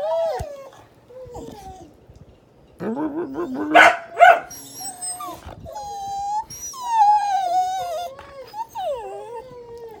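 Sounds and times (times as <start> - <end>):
dogs whining: 0.0 - 2.0, 2.8 - 10.0
dog barks: 3.6 - 4.6.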